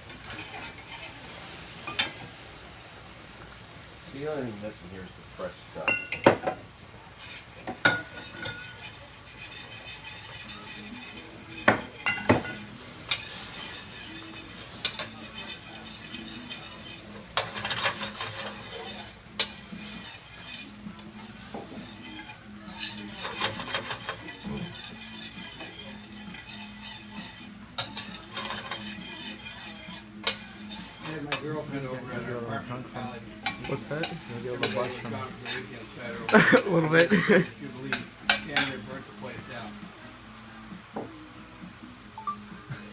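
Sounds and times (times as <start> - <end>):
steady sizzling: 0.0 - 42.9
metal spoon scraping a pan: 0.1 - 2.4, 7.2 - 31.9, 33.0 - 39.0
metal clinking on pan: 1.8 - 2.2, 5.8 - 6.6, 7.7 - 31.4, 37.9 - 38.8.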